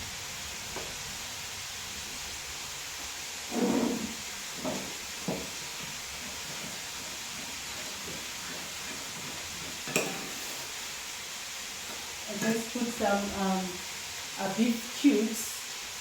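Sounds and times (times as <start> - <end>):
pot steaming hiss: 0.0 - 16.0
kitchen knocks: 3.5 - 5.6.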